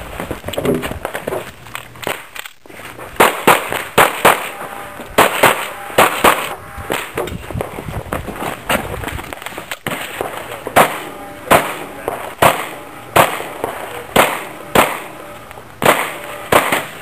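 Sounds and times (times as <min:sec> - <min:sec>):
pistol shots with echo: 0:03.2 - 0:07.2, 0:09.8 - 0:17.0.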